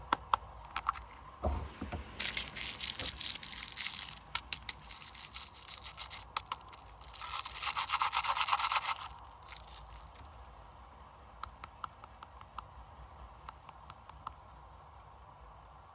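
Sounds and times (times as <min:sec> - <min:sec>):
snack packaging crinkling: 0:00.9 - 0:10.5.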